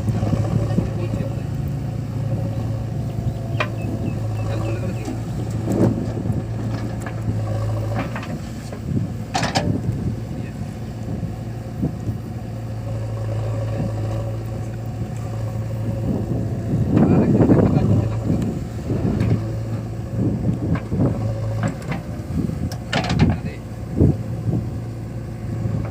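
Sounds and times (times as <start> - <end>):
diesel engine running: 0.0 - 25.9
metal knocks and clank: 5.0 - 9.8, 22.7 - 23.5.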